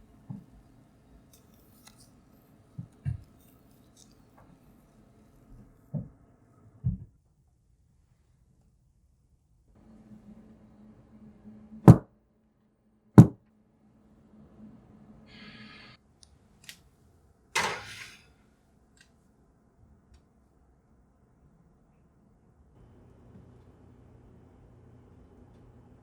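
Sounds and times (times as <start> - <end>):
short scraping hiss: 15.3 - 16.0, 17.6 - 18.3.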